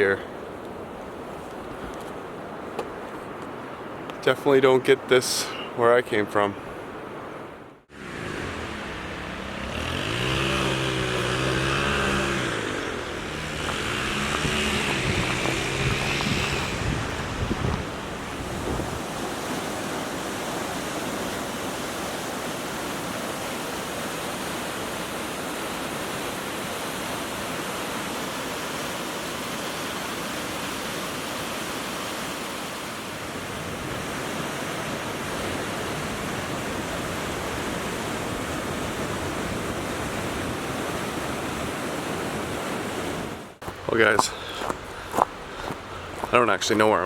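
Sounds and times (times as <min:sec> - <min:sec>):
fast-flowing creek water: 0:07.9 - 0:47.0.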